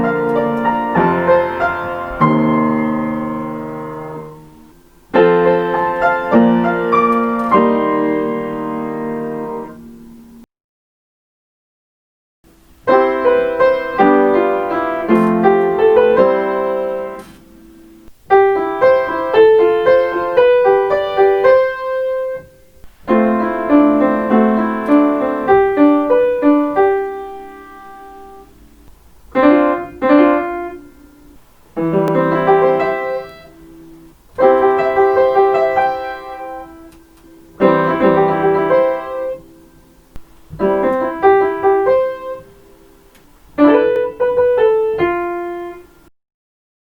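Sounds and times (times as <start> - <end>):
solo piano chime melodies: 18.3 - 22.5, 23.1 - 28.5, 34.4 - 39.6.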